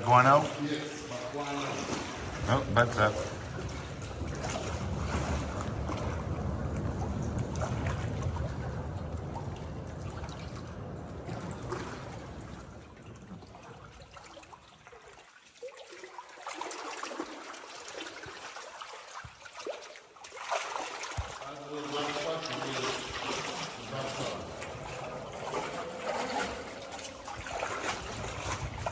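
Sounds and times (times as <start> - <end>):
river water trickling and lapping: 0.0 - 28.9
low rumble: 3.5 - 14.0.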